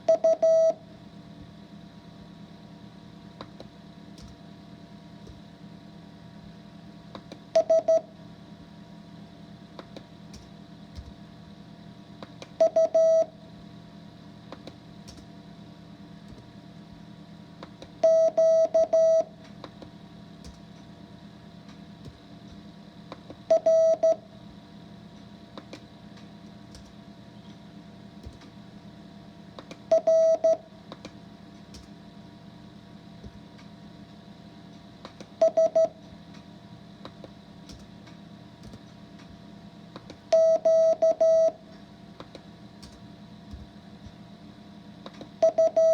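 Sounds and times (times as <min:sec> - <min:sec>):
low steady hum: 0:00.0 - 0:45.9
morse code beeps: 0:00.1 - 0:00.8, 0:07.6 - 0:08.1, 0:12.6 - 0:13.3, 0:18.0 - 0:19.3, 0:23.5 - 0:24.2, 0:29.9 - 0:30.6, 0:35.4 - 0:35.9, 0:40.3 - 0:41.6, 0:45.4 - 0:45.9.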